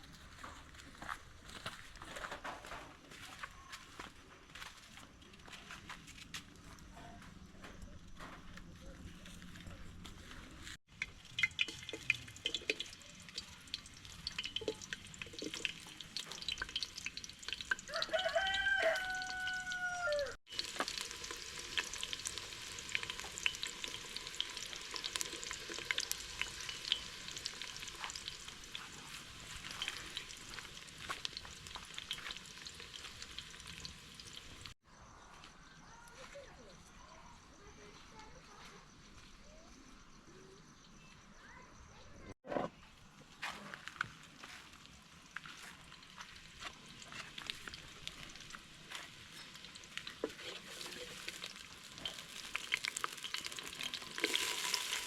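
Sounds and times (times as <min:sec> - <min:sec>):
food sizzling in a pan: 0:10.8 - 0:34.8, 0:43.9 - 0:55.0
rooster crowing: 0:17.9 - 0:20.4.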